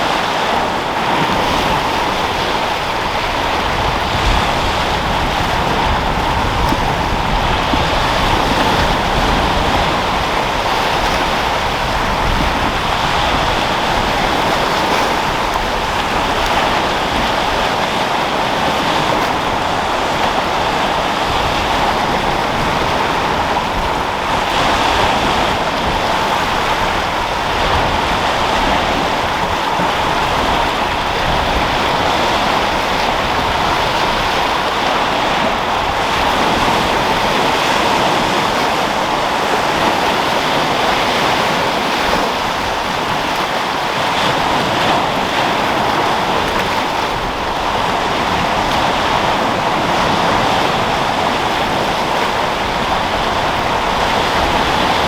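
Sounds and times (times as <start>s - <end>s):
waves breaking on rocky shore: 0.0s - 55.0s
wind on microphone: 0.0s - 55.0s.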